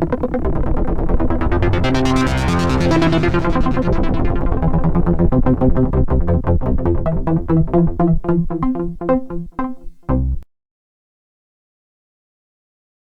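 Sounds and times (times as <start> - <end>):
synth bass line: 0.0 - 10.4
synthesizer sequenced run: 0.0 - 10.4.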